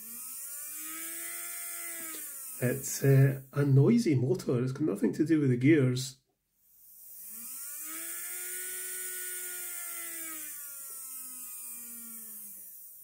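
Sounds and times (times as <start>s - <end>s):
small motor whirring whine: 0.0s - 3.1s, 6.6s - 13.0s.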